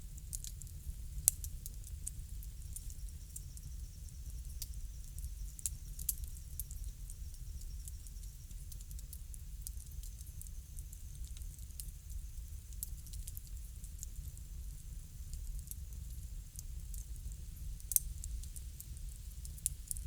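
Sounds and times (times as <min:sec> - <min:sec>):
wood fire crackling: 0:00.1 - 0:20.0.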